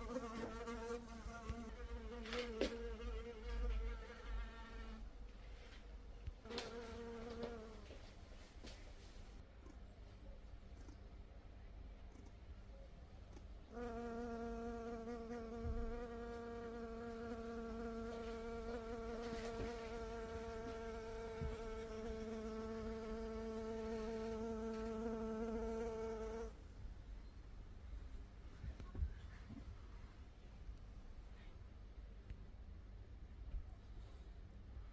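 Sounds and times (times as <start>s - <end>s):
bee wingbeat buzz: 13.7s - 26.5s.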